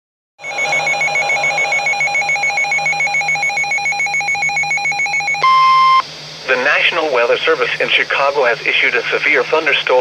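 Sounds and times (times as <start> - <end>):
electronic warble alert tone: 0.4 - 6.0.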